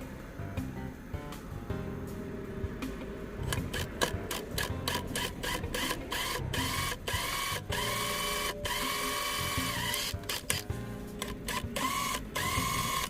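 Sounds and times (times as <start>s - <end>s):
power tool motor whining: 3.5s - 13.0s.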